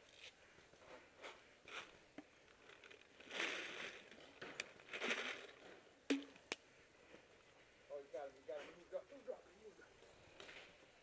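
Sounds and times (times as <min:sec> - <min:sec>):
soft rustling and crunching: 0:00.0 - 0:11.0
sharp snaps: 0:06.1 - 0:06.7.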